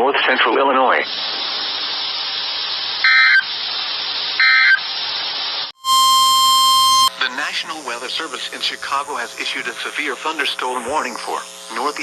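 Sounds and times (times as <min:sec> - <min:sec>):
radio static hiss: 0:00.0 - 0:12.0
short electronic beeps: 0:05.8 - 0:07.2.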